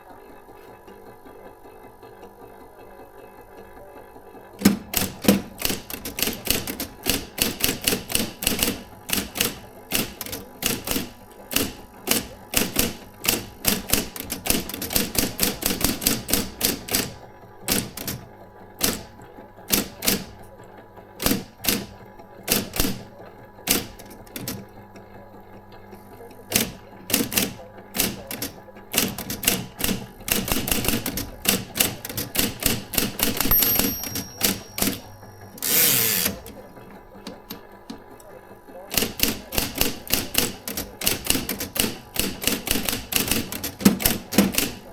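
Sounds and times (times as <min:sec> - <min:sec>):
electric typewriter keystrokes: 0:04.6 - 0:20.6, 0:21.2 - 0:25.1, 0:25.8 - 0:44.9
high steady tone: 0:33.5 - 0:36.6.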